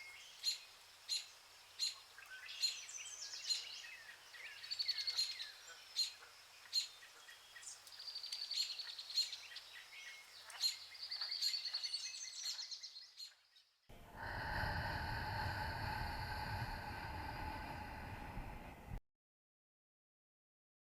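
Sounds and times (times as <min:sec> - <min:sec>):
songbirds chirping and trilling: 0:00.0 - 0:18.8
steady low drone: 0:13.9 - 0:19.0.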